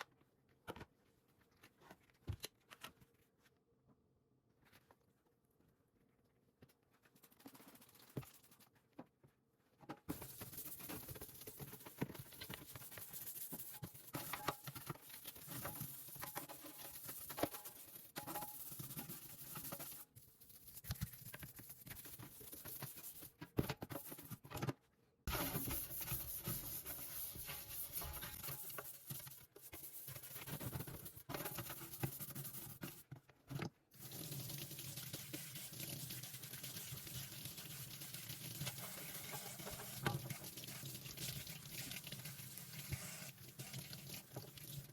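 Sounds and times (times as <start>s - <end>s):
scrubbing and rubbing: 10.1s - 23.4s, 25.3s - 33.1s, 34.0s - 42.0s.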